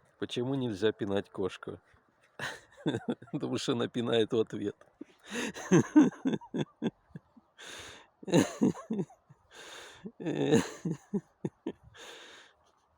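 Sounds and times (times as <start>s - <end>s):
man laughing hard: 2.4s - 3.6s, 5.2s - 12.4s
gasping in-breaths: 5.0s - 5.7s, 7.6s - 8.2s, 9.5s - 10.6s, 11.9s - 12.6s.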